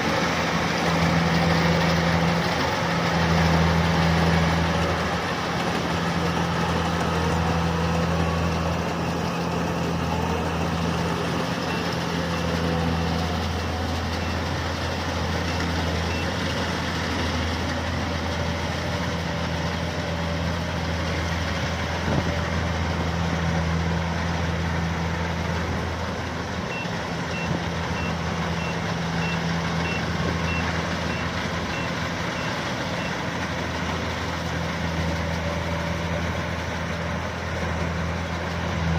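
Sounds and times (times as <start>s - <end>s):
harvester engine running: 0.0s - 38.9s
high warning beeps: 26.7s - 33.2s.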